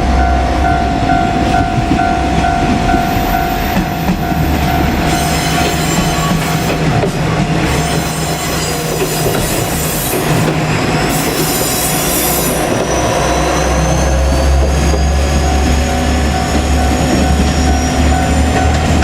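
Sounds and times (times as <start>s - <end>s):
diesel railcar engine hum: 0.0s - 19.0s
high rising whine: 0.8s - 10.2s.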